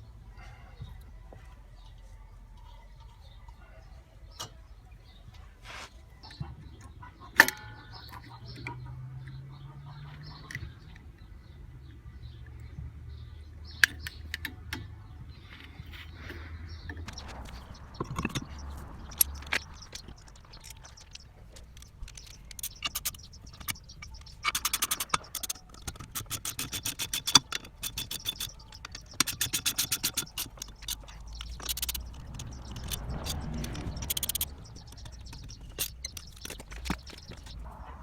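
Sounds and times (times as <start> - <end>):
metal tools clicking: 16.9 - 37.7
metal tools scraping: 17.0 - 37.9
sharp metal knocks: 17.0 - 38.0.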